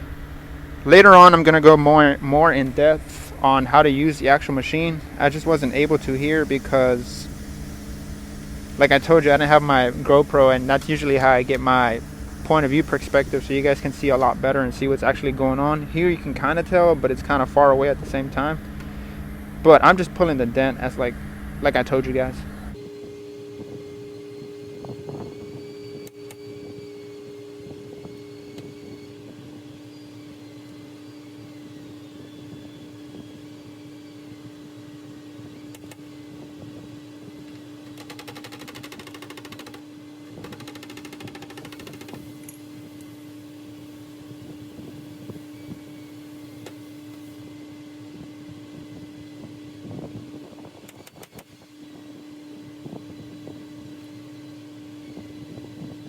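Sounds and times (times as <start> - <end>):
steady machine hum: 0.0 - 56.0
rapid clicking: 37.9 - 39.8, 40.4 - 42.2.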